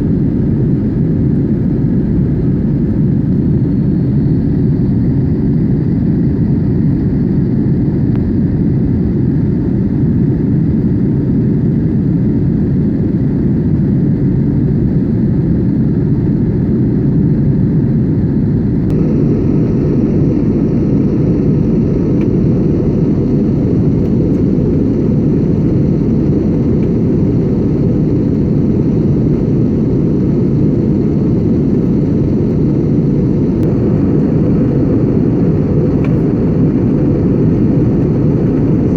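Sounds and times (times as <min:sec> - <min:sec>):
jet engines running: 0:00.0 - 0:38.9.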